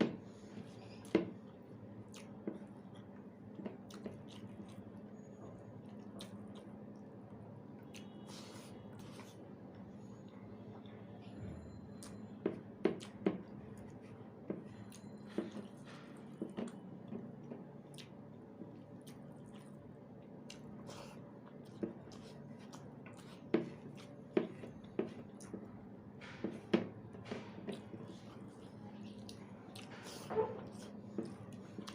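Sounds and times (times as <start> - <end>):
faint low hum: 0.0 - 31.9
wet chewing mouth noises: 1.0 - 5.0, 7.8 - 9.5, 13.8 - 25.7, 27.6 - 31.9.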